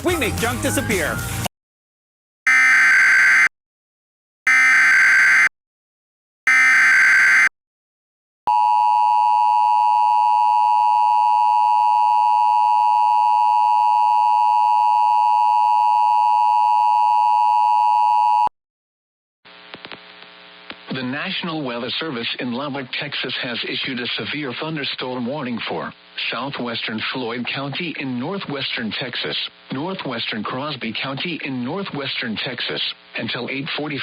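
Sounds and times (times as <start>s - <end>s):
warbling data header tones: 4.5s - 5.5s, 6.5s - 7.5s.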